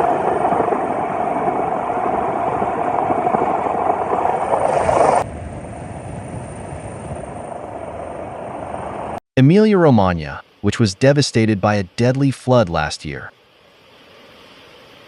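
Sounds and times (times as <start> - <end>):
helicopter engine and rotors: 5.3 - 9.2.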